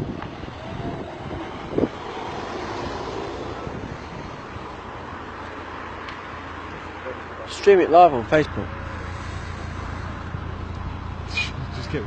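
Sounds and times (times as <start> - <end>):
wind buffeting microphone: 0.0 - 6.9
steady traffic noise: 0.0 - 12.0.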